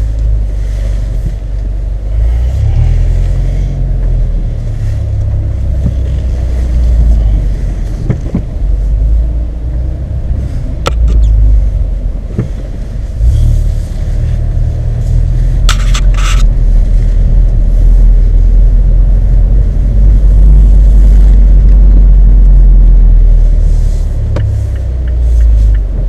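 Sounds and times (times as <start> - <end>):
car exhaust rumble: 0.0 - 26.0
short scraping clicks: 15.6 - 16.5.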